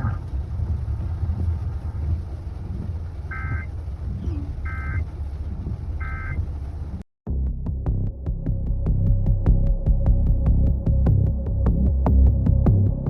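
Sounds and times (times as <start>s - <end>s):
car driving rumble: 0.0s - 13.0s
pulsing beat: 7.3s - 13.0s.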